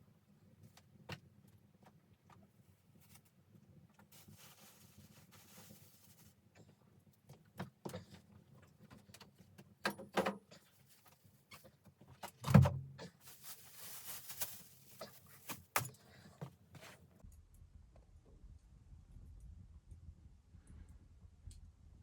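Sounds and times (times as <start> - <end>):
rustling or scraping: 4.0 - 6.4, 13.1 - 17.2.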